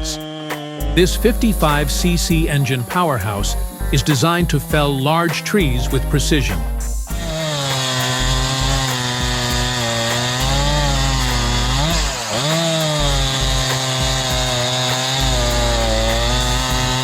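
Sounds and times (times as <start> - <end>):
chainsaw cutting wood: 0.0 - 17.0.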